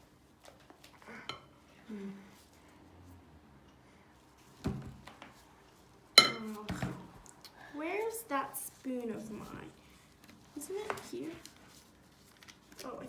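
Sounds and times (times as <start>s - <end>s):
spoon clinking against bowl: 6.2s - 6.5s.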